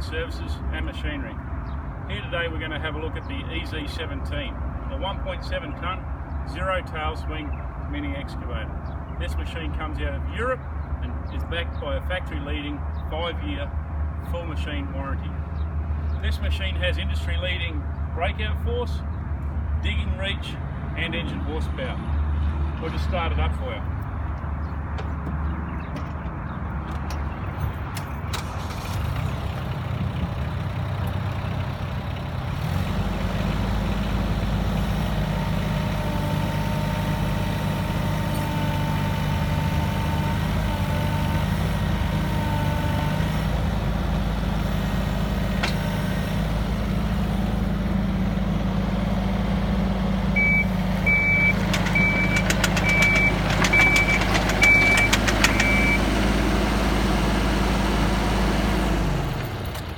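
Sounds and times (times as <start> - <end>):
diesel engine running: 0.0 - 59.9
warning alarm beeping: 50.4 - 56.1.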